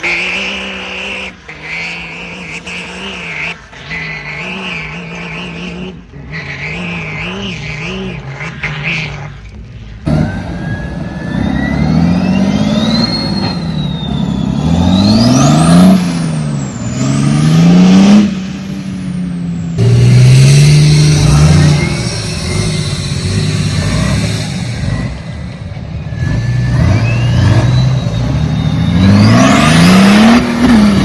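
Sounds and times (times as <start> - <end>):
off-road vehicle engine revving: 0.0 - 31.0
high whine: 10.1 - 31.0.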